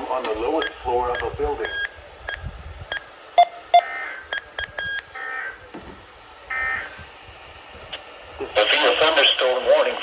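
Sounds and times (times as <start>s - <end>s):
radio keypad beeps: 0.3s - 5.2s
longer beep tones: 0.6s - 5.1s.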